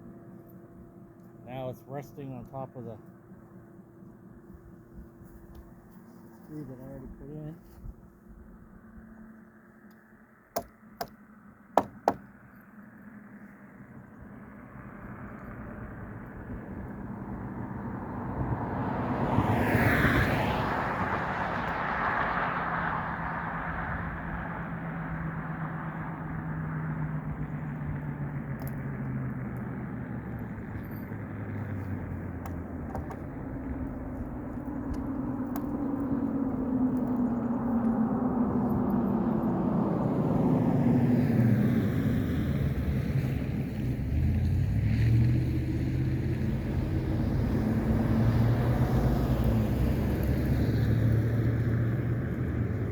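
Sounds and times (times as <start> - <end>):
vehicle passing on road: 0.0 - 52.9.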